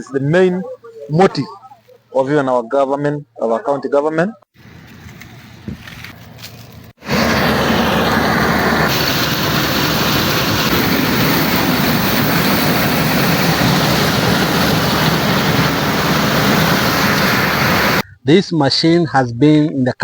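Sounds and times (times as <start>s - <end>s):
combine harvester running: 4.6s - 18.0s.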